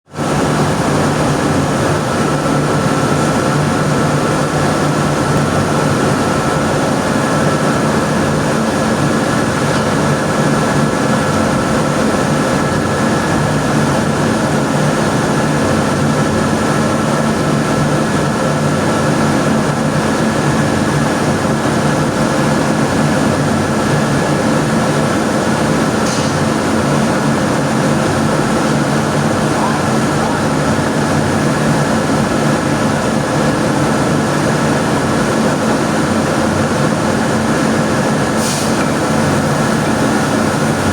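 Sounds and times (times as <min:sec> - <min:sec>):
machinery droning: 0:38.6 - 0:40.9.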